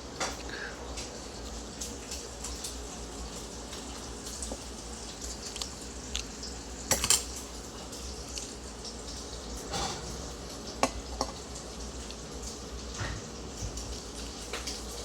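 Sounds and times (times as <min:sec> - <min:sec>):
cutlery clinking on a plate: 0:06.9 - 0:07.4.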